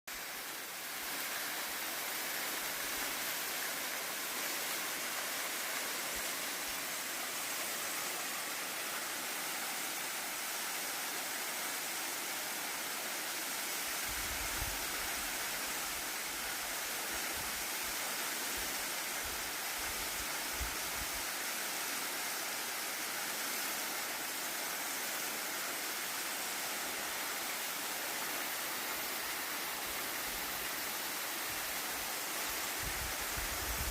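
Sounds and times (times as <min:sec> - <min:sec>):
waterfall rushing: 0:00.1 - 0:33.9.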